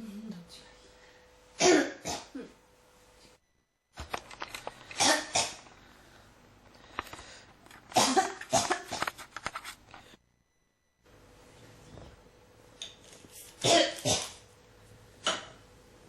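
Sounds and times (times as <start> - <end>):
person coughing: 1.6 - 2.6, 5.0 - 5.6, 7.9 - 9.1, 13.6 - 14.4.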